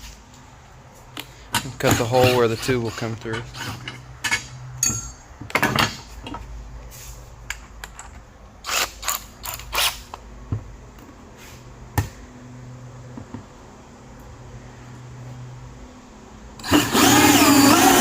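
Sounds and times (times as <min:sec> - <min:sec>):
clicks and scrapes of tools: 0:07.4 - 0:10.2.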